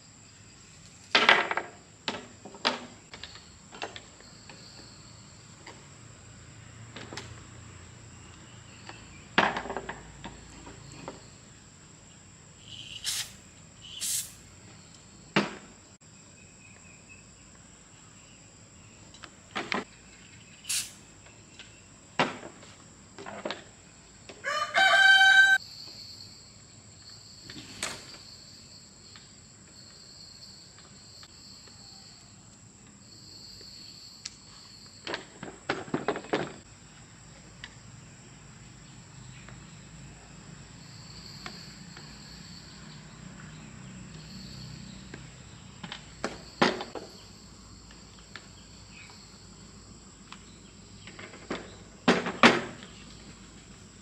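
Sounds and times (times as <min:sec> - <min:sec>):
high insect drone: 0:00.0 - 0:22.2, 0:23.9 - 0:35.2, 0:36.6 - 0:51.0
rooster crowing: 0:24.4 - 0:25.6.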